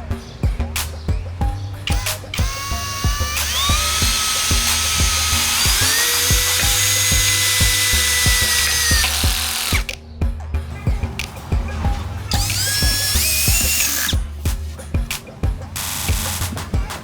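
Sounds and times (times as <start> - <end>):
background music with beat: 0.0 - 17.0
electric motor whining: 1.9 - 9.9, 12.3 - 14.2.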